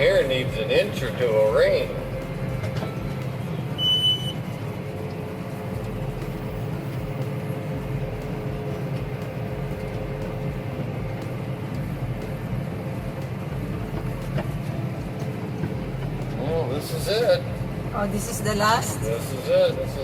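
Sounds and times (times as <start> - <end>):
engine droning: 0.0 - 20.0.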